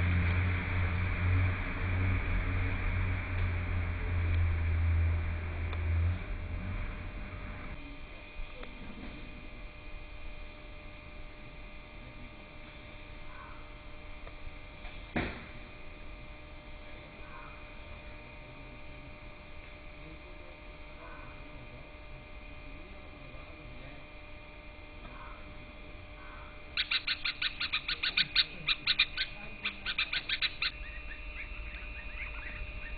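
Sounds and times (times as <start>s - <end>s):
electrical hum: 0.0s - 32.9s
faint bird calls: 13.3s - 13.8s, 17.2s - 17.7s, 26.2s - 32.9s.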